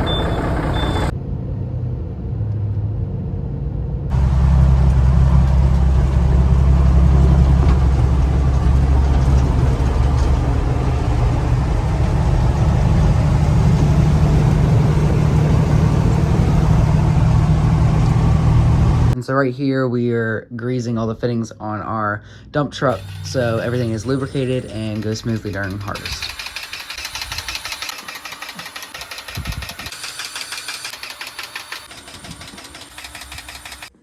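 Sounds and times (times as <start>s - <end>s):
heavy truck engine idling: 0.0s - 1.1s, 4.1s - 19.2s.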